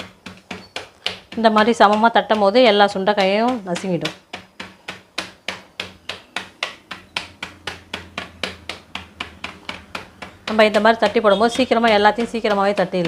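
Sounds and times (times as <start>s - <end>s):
wooden masher tapping berries: 0.0s - 13.0s.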